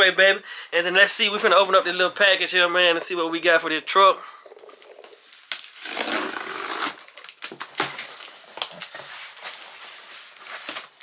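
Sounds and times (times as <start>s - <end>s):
package rustling and scraping: 4.6s - 11.0s
packaging crinkles and taps: 7.0s - 9.6s.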